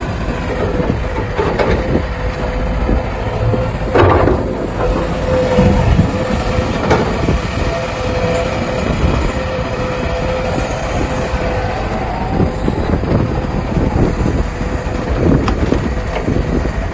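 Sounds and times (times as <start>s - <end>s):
excavator diesel engine rumbling: 0.0s - 16.9s
metallic clanks: 3.4s - 7.4s.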